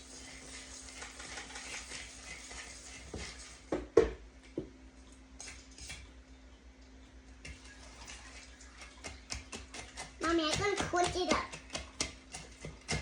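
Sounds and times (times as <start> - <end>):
utensil scraping in a bowl: 0.0 - 3.7, 7.4 - 13.0.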